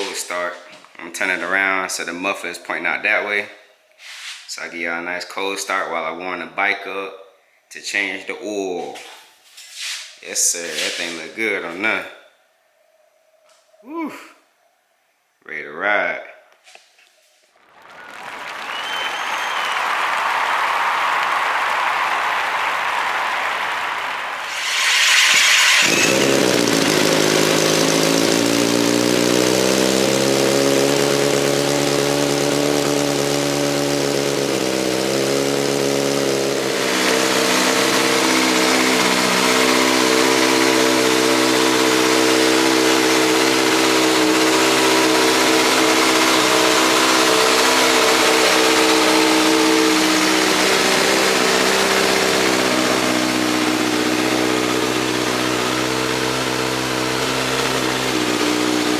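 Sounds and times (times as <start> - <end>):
motorcycle engine idling: 25.9 - 58.9.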